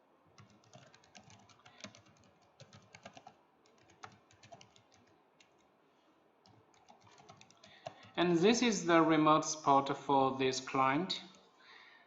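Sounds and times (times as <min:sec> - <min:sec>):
faint keyboard typing: 0:00.3 - 0:05.8, 0:06.4 - 0:08.4.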